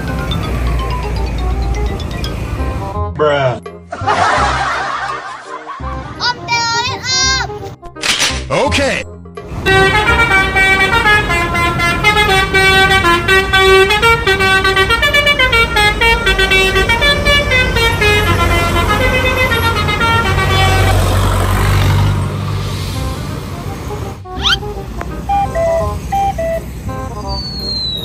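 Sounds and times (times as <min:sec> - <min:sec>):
bus horn playing a tune: 0:09.6 - 0:21.2, 0:24.2 - 0:27.8.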